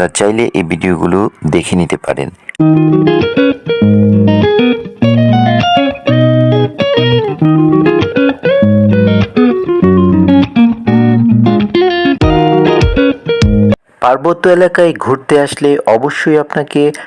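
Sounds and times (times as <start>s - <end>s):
guitar plucked and bent notes: 2.6s - 13.8s
steady bass line: 9.8s - 13.8s.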